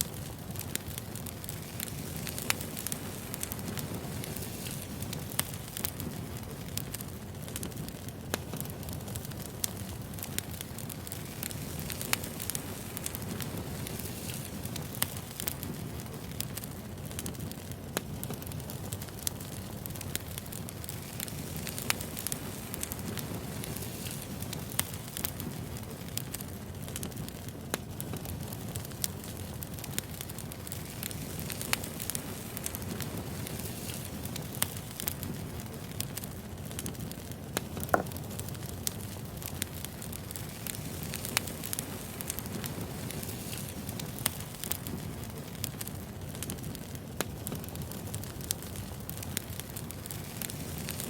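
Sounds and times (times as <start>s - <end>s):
crackles and pops of burning logs: 0.0s - 51.0s
low rumble of flames: 0.0s - 51.0s.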